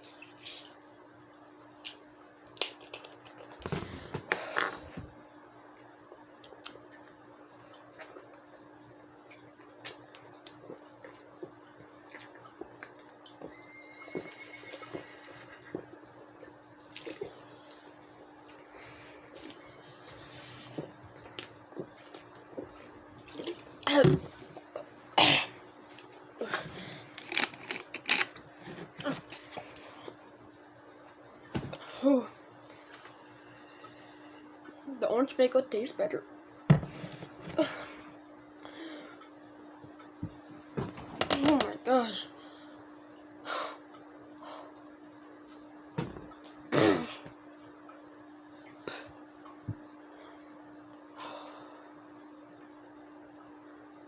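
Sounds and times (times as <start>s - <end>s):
person gulping: 3.4s - 5.0s, 26.4s - 29.6s
person coughing: 25.2s - 25.5s, 46.7s - 47.2s
throat clearing: 46.7s - 47.3s.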